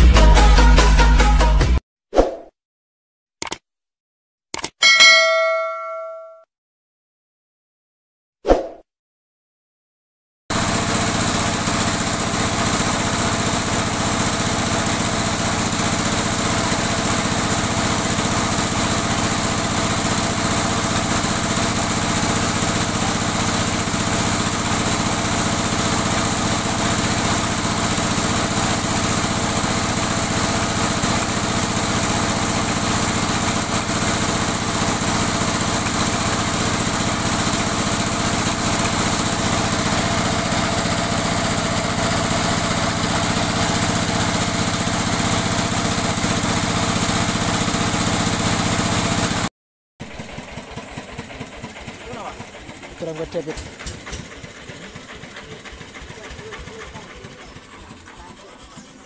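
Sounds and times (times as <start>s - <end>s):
drilling machine drone: 10.5s - 59.0s.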